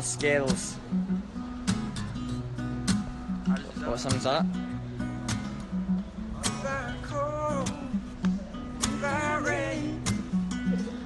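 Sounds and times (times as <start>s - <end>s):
guitar chords and sliding melody: 0.0s - 11.0s.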